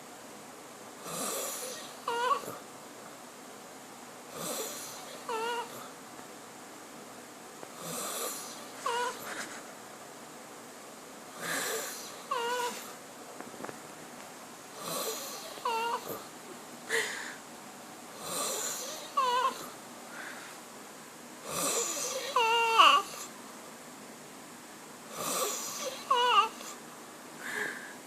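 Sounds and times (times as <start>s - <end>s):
person snoring: 1.0s - 2.6s, 4.3s - 5.9s, 7.8s - 9.3s, 11.4s - 12.9s, 14.8s - 16.2s, 18.2s - 19.7s, 21.4s - 23.3s, 25.1s - 26.8s.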